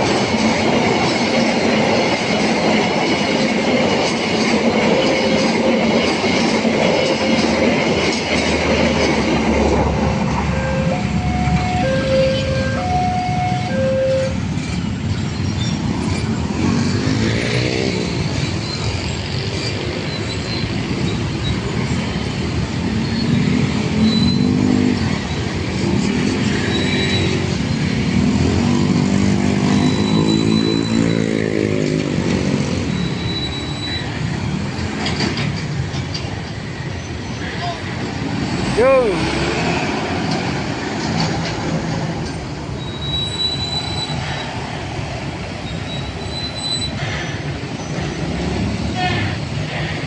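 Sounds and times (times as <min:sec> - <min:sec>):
rumble of passing vehicles: 0:00.0 - 0:50.0
motorcycle and car engines: 0:08.9 - 0:36.0, 0:38.0 - 0:50.0.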